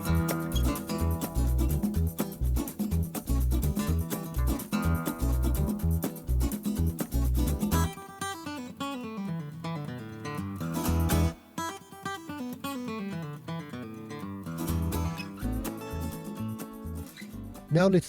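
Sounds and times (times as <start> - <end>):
low bass line: 0.0 - 7.9
acoustic guitar music: 0.0 - 18.0.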